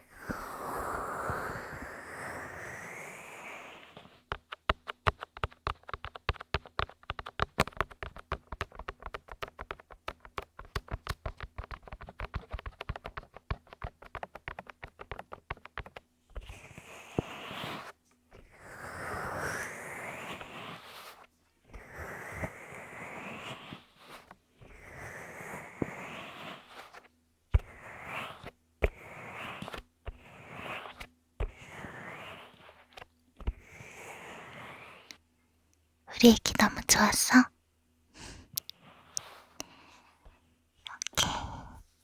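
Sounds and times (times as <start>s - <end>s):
soft breathy rushing sound: 0.0s - 4.0s, 41.0s - 41.9s
close-up clicks and taps: 4.3s - 16.1s.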